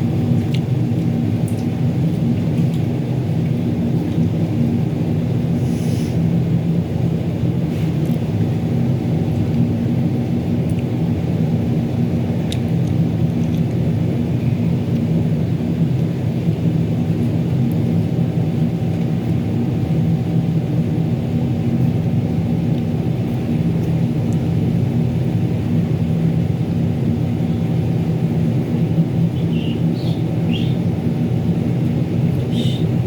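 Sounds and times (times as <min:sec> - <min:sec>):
machine humming: 0:13.1 - 0:33.0.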